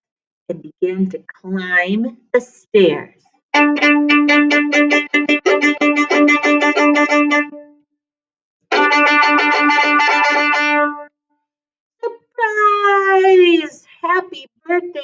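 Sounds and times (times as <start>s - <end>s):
rapid repeated notes: 3.6s - 7.6s, 8.7s - 11.0s.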